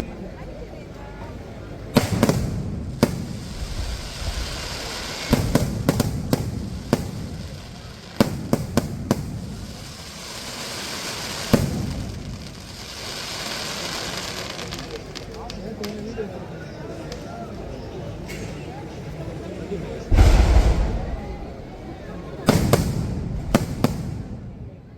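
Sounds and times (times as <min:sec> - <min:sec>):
fireworks bangs: 0:01.9 - 0:15.5, 0:20.0 - 0:24.9
fireworks crackling hiss: 0:01.9 - 0:16.2, 0:20.0 - 0:24.6.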